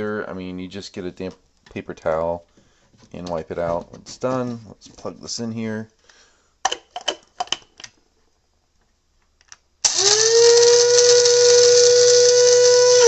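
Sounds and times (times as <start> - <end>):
coffee grinder motor whining: 9.8 - 13.0.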